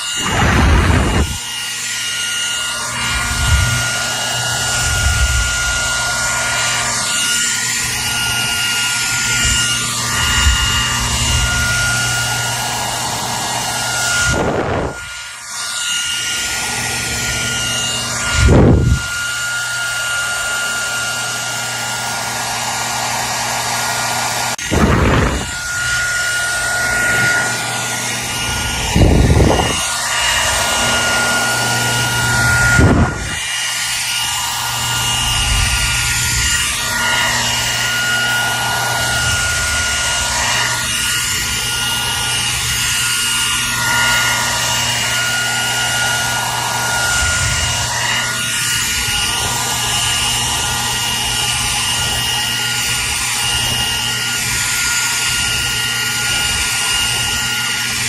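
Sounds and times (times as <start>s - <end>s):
hair dryer running: 0.0s - 58.0s
low thumps: 0.2s - 1.4s.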